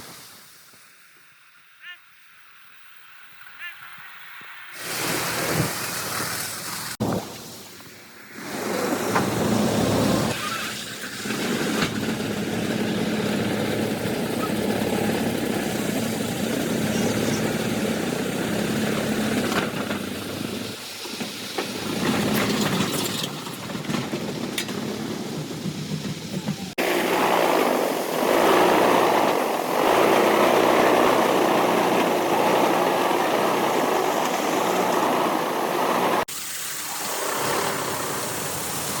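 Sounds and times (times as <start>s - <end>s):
heavy machinery humming and clattering: 8.6s - 36.2s.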